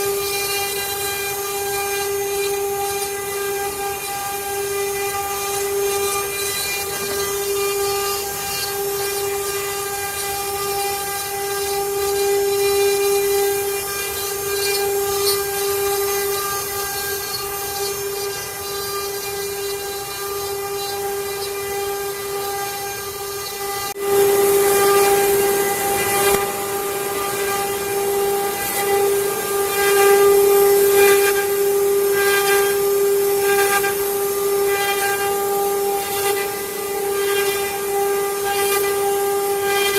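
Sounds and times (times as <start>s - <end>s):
router spindle whining: 0.0s - 39.9s.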